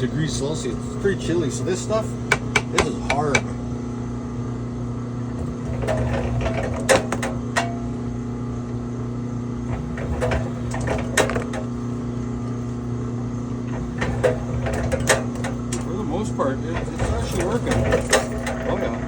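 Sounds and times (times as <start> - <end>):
wire stripping machine humming: 0.0 - 19.0
clicks and knocks: 5.4 - 7.9, 9.7 - 11.7, 13.7 - 16.0.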